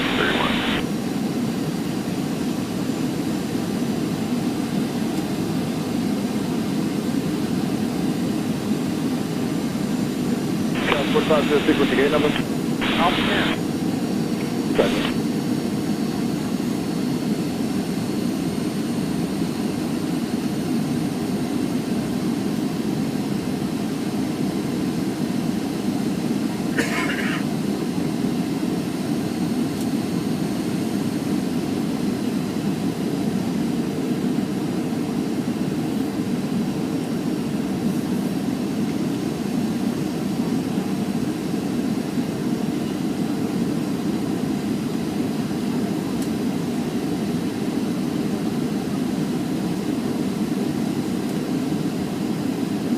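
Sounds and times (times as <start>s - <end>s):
aircraft cabin rumble: 0.0s - 0.8s, 10.8s - 13.6s, 14.4s - 15.2s.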